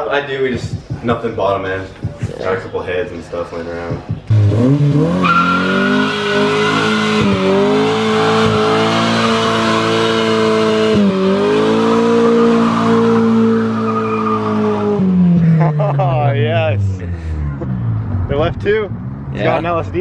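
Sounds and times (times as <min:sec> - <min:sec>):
car engine at high revs: 0:04.1 - 0:20.0
tyres squealing: 0:04.6 - 0:10.6, 0:11.8 - 0:15.0.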